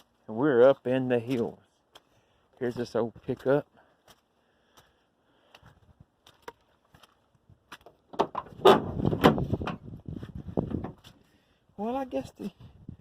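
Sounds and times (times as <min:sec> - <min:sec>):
truck door metal clunks and rattles: 0:07.9 - 0:10.0.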